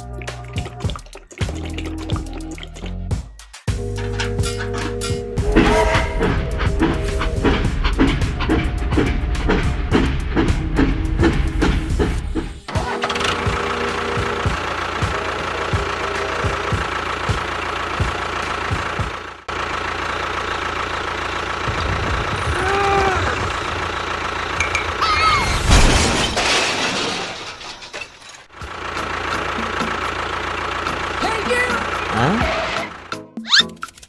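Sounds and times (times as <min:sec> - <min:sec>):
squeaky rising and falling tones: 0:05.4 - 0:11.6, 0:31.8 - 0:34.0
small engine running: 0:05.4 - 0:25.1, 0:28.6 - 0:33.1.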